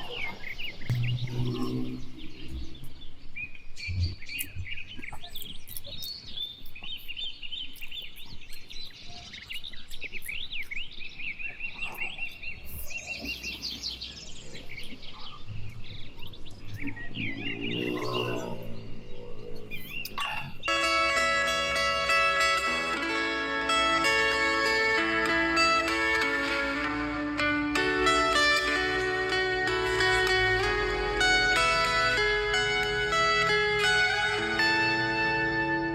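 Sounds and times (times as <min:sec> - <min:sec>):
small birds chirping: 0:00.0 - 0:35.9
low drawn-out animal call: 0:00.9 - 0:03.1, 0:15.6 - 0:20.6.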